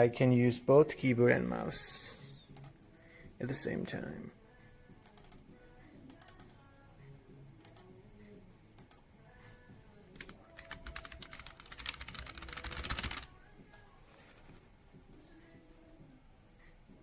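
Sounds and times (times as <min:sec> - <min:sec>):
keyboard typing: 0:02.5 - 0:02.8, 0:05.0 - 0:05.4, 0:06.1 - 0:06.6, 0:07.6 - 0:07.9, 0:10.2 - 0:13.4.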